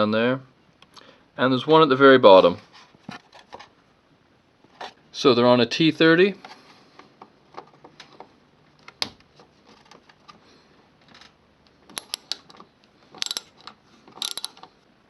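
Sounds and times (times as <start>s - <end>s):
hand tool metal clicks and taps: 11.9s - 12.6s.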